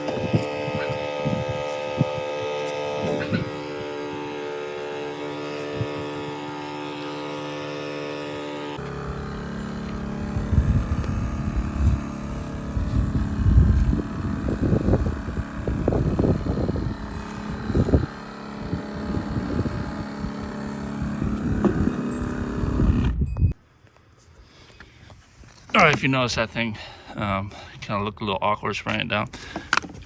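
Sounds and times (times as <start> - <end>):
wind gusting on microphone: 0.1 - 3.9, 10.0 - 23.6
truck-mounted engine running: 2.5 - 23.2.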